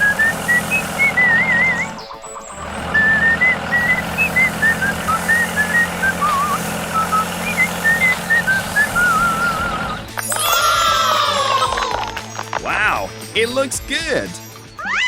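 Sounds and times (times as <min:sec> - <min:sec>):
person whistling a tune: 0:00.0 - 0:10.1
low engine-like hum: 0:00.0 - 0:10.2.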